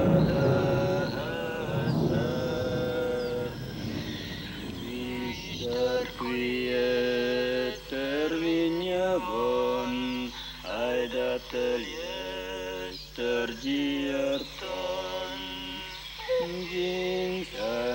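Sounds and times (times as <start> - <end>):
man singing a slow chant: 0.0 - 17.9.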